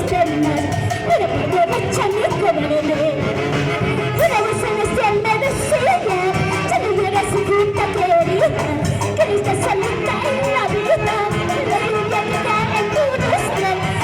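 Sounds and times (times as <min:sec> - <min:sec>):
band playing folk music: 0:00.0 - 0:14.0.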